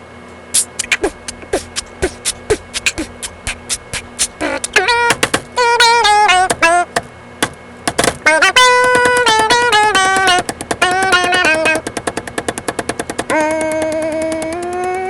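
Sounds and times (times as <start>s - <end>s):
mouth clicks and pops: 0.5s - 5.4s
wavering hummed tone: 0.6s - 7.0s, 8.2s - 11.9s.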